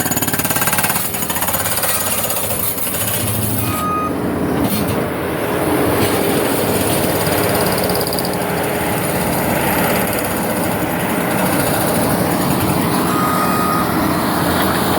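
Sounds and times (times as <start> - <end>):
heavy machinery engine running: 0.0 - 14.9
high beep: 3.6 - 4.2, 13.1 - 13.9.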